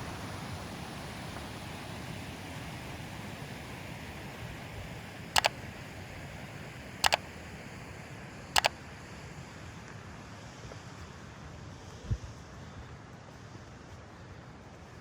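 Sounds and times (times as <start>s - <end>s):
sharp double clicks: 5.4s - 5.6s, 7.0s - 7.3s.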